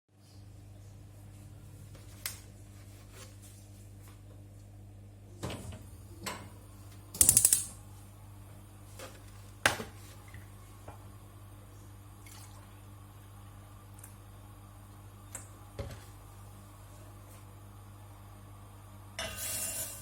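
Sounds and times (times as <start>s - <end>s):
steady low hum: 0.2s - 20.0s
rattle of sharp clicks: 7.2s - 7.7s.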